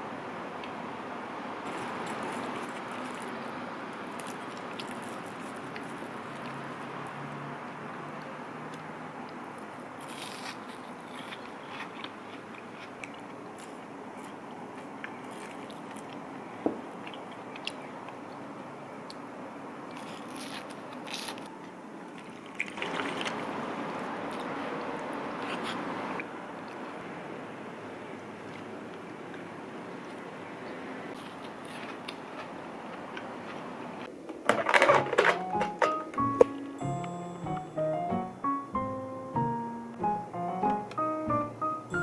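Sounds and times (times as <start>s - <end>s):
chewing crisp food: 1.7s - 23.2s.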